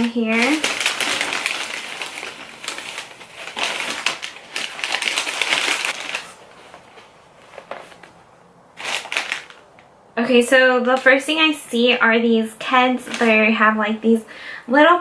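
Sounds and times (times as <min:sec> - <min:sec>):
packaging rustling and crinkling: 0:00.0 - 0:09.9, 0:12.7 - 0:13.7.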